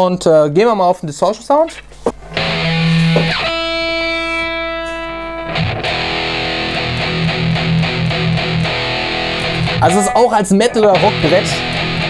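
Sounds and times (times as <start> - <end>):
distorted electric guitar: 5.4 - 12.0.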